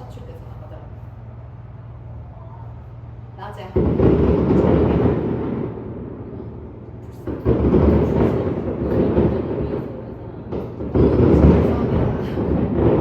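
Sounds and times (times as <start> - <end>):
faint fireworks crackling: 2.6 - 13.0
fireworks booming: 3.6 - 13.0.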